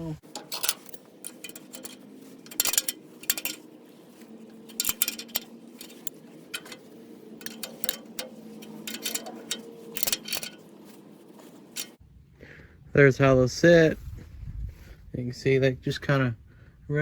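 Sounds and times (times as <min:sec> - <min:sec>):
metal tubes clinking: 0:00.2 - 0:12.0.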